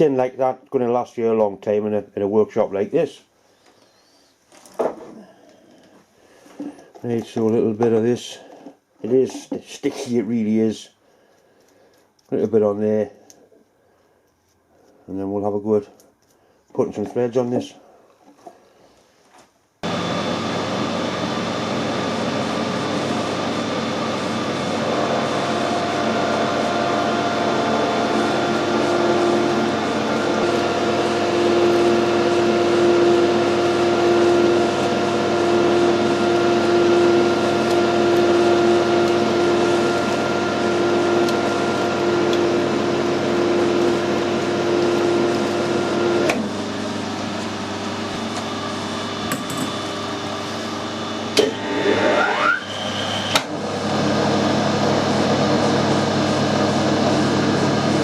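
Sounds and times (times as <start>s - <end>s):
motor whine starting up: 19.8s - 58.0s
metal lathe running: 19.9s - 50.4s, 51.2s - 58.0s.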